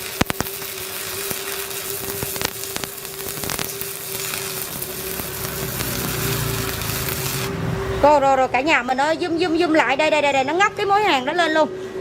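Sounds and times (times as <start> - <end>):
sharp pops: 0.0 - 0.6, 2.0 - 7.5
welding arc crackling and sizzling: 0.0 - 9.0.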